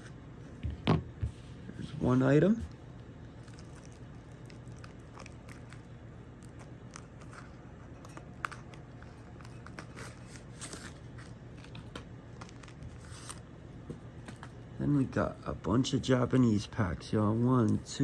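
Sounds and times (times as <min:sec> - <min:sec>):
low steady hum: 0:00.0 - 0:18.0
packaging crinkling and clicking: 0:03.4 - 0:13.4.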